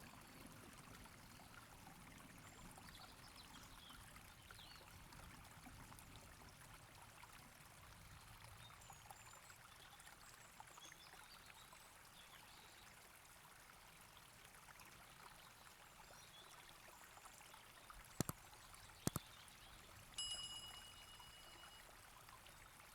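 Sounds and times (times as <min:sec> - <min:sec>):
faint steady hiss: 0:17.2 - 0:22.9
sharp clicks: 0:18.2 - 0:18.4, 0:19.0 - 0:19.3
short high ringing tone: 0:20.2 - 0:22.0.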